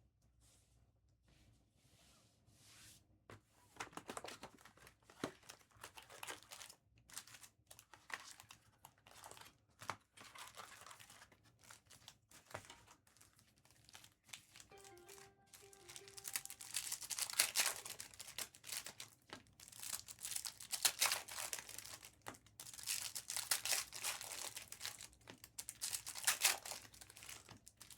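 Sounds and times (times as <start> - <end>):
foil wrappers tearing and crinkling: 13.2 - 27.9.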